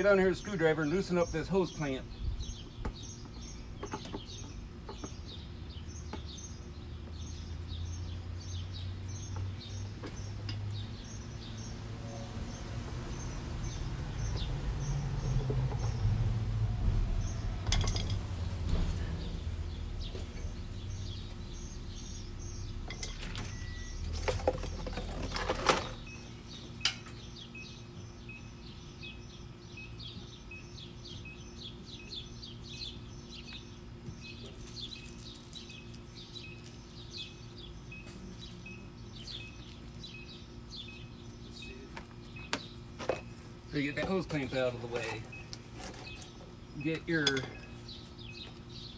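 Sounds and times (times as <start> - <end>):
low rumble: 11.9 - 24.2
small bird chirping: 26.0 - 48.9.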